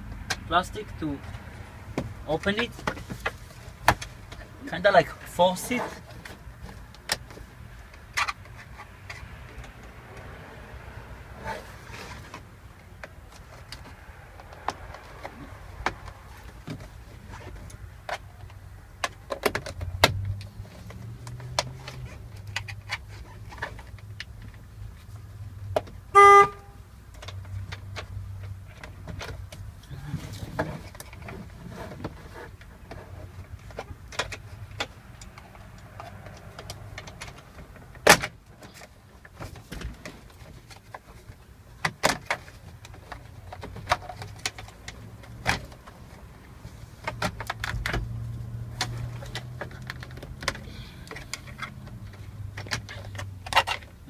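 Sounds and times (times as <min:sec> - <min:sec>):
loud short beep: 0:26.2 - 0:26.6.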